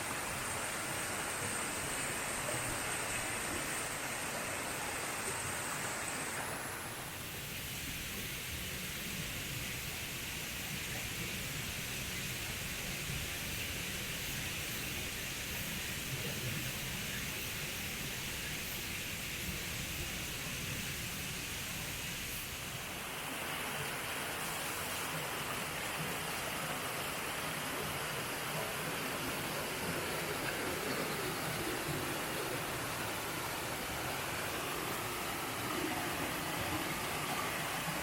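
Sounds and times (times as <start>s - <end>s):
stream rushing over rocks: 22.5s - 38.0s.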